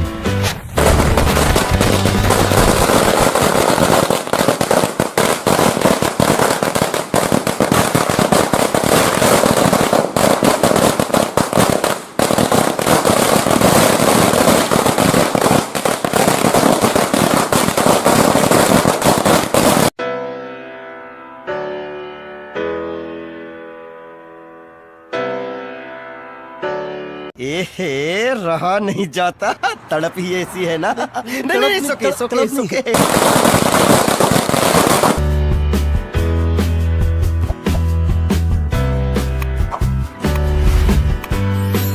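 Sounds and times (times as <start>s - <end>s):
firecrackers popping and crackling: 0.4s - 20.0s, 32.9s - 35.2s.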